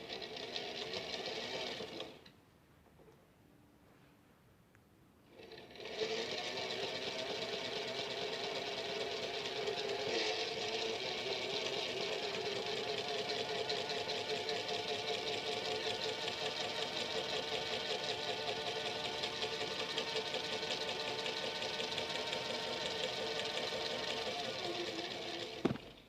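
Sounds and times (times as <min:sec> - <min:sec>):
washing machine running: 0:05.3 - 0:26.0.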